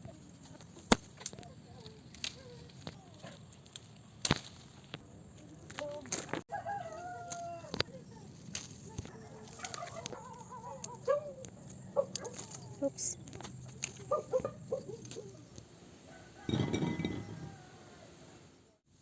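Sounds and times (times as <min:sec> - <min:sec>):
wavering animal calls: 0:09.1 - 0:15.6.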